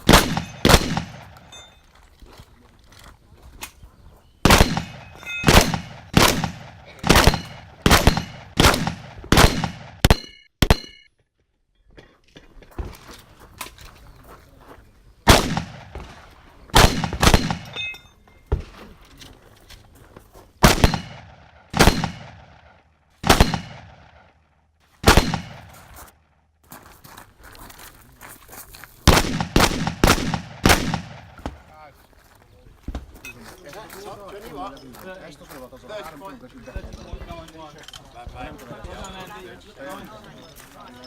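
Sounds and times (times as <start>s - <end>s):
shotgun shots: 0.0s - 1.5s, 4.4s - 11.0s, 15.3s - 17.8s, 20.6s - 24.4s, 25.0s - 26.0s, 29.1s - 31.7s
steel targets ringing: 4.8s - 5.8s.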